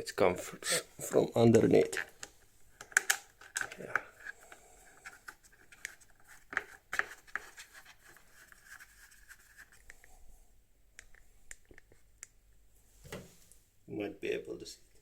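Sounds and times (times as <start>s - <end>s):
faint clicks and taps: 1.5s - 10.1s, 10.9s - 12.4s.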